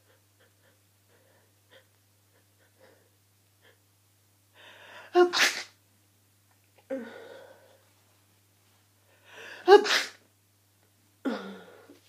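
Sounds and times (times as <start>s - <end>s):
person sneezing: 5.2s - 5.8s, 9.6s - 10.2s.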